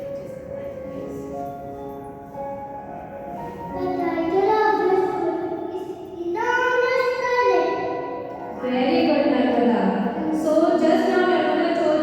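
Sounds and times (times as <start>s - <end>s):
melodic accompaniment: 0.0s - 6.3s, 7.7s - 11.9s
child singing: 3.8s - 7.9s.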